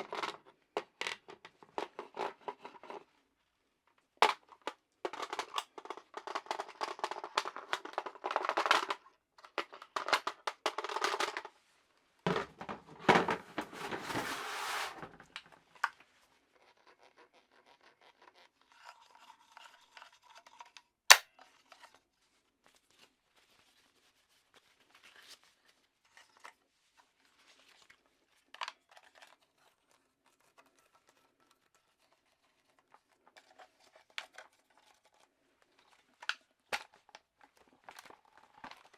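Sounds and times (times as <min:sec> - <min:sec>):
rubbing and scraping on a gun: 0:12.3 - 0:38.9.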